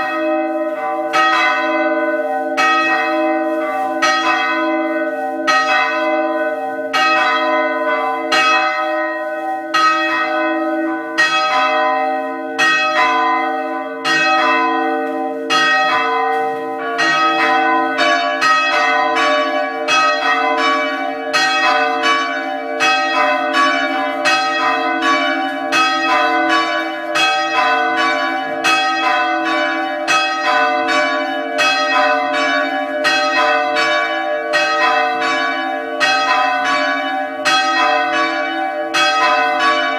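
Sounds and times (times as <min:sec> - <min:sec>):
church bells ringing: 0:00.0 - 0:39.9.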